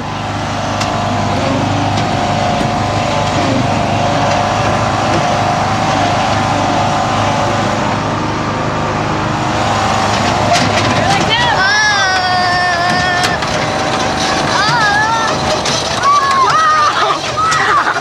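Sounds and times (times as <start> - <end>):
riding lawnmower engine running: 0.0 - 18.0
steady whine: 0.0 - 18.0.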